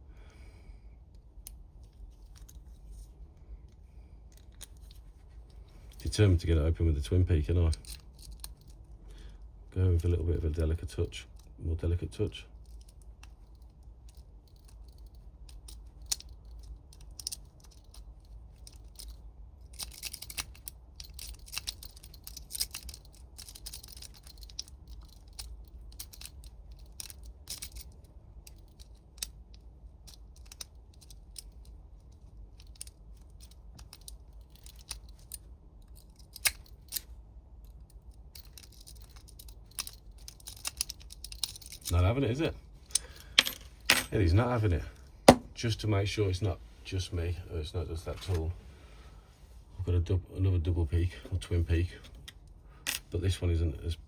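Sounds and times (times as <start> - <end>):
low steady hum: 0.0 - 54.0
lock pick scraping and clicking: 12.6 - 37.1, 37.9 - 41.9.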